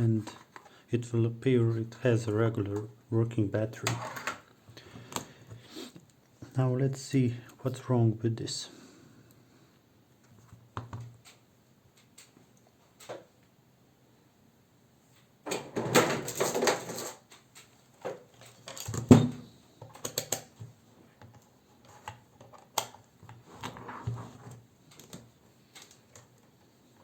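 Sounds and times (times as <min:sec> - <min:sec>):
rustling and scraping of parts: 0:00.0 - 0:00.8, 0:15.1 - 0:27.0
light clicks and rattles: 0:24.5 - 0:26.7.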